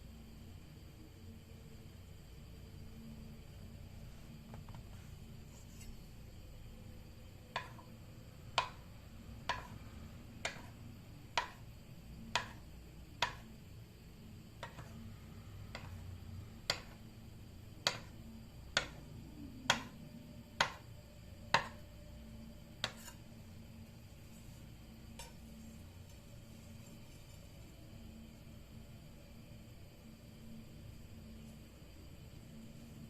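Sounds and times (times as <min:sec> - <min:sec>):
knife chopping on cutting board: 0:09.5 - 0:09.7, 0:22.8 - 0:23.2.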